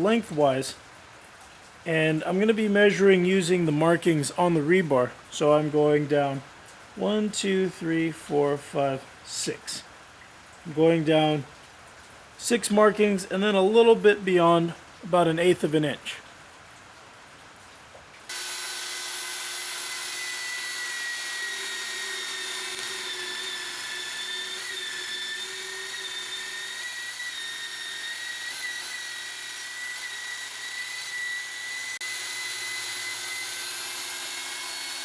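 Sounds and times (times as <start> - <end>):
rotary cutting tool whining: 18.3 - 35.0.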